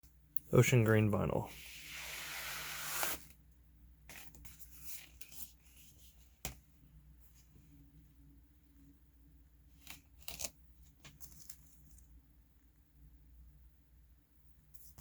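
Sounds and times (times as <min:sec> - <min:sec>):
paper sliding hiss: 0:01.5 - 0:03.4.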